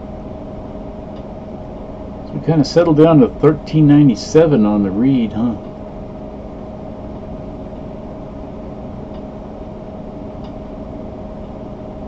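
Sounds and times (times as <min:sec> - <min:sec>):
computer fans humming: 0:00.0 - 0:12.0.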